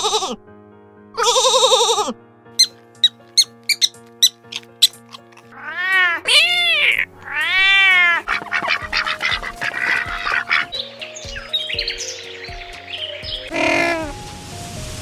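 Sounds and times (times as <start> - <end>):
background music: 0.0 - 15.0
cat meowing: 5.1 - 10.6.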